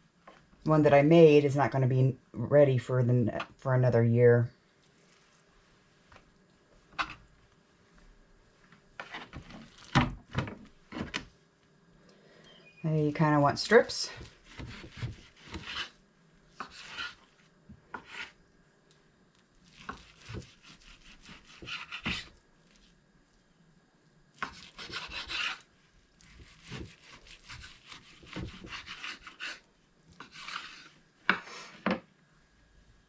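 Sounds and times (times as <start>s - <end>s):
knife slicing on cutting board: 14.4s - 16.0s, 16.6s - 17.3s, 19.8s - 22.3s, 24.4s - 25.6s, 26.3s - 29.6s, 30.2s - 30.9s.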